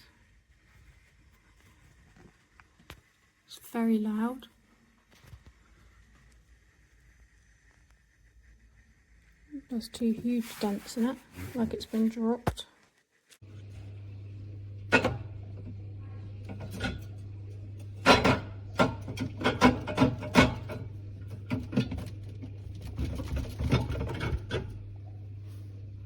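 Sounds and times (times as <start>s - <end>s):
mini fridge humming: 0.0s - 26.0s
knocks clunks and rattles: 18.0s - 24.8s.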